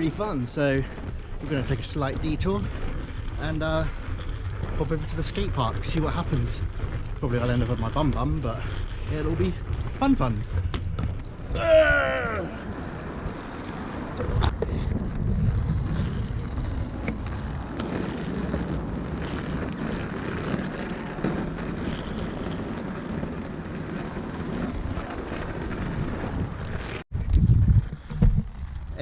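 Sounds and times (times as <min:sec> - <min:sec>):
skate wheels rolling on pavement: 0:00.0 - 0:29.0
wind buffeting microphone: 0:00.0 - 0:29.0.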